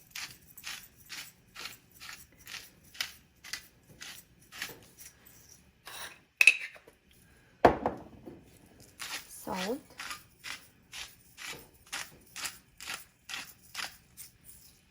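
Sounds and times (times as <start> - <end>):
pepper mill grinding: 0.0 - 5.6, 8.8 - 14.8.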